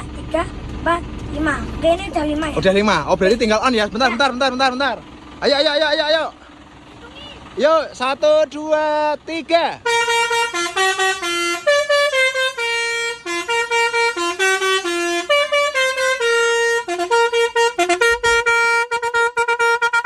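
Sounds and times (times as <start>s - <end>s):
musical horn melody: 9.8s - 20.0s.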